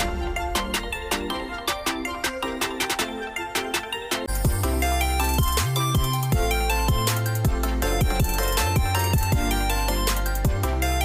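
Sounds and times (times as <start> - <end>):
electronic beat music: 0.0 - 11.0.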